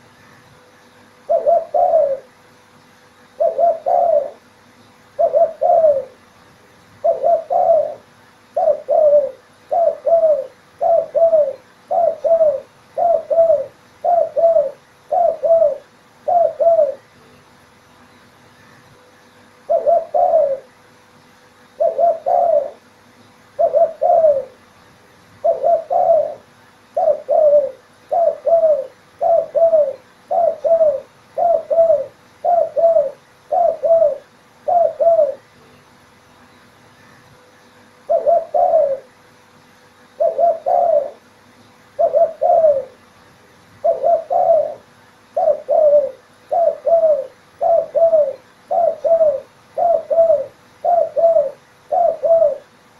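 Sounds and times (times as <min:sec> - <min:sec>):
dove cooing: 0:01.2 - 0:02.4, 0:03.3 - 0:06.3, 0:07.0 - 0:17.2, 0:19.6 - 0:20.8, 0:21.7 - 0:22.9, 0:23.5 - 0:24.6, 0:25.4 - 0:35.6, 0:38.0 - 0:39.2, 0:40.2 - 0:41.3, 0:42.0 - 0:43.1, 0:43.8 - 0:52.8.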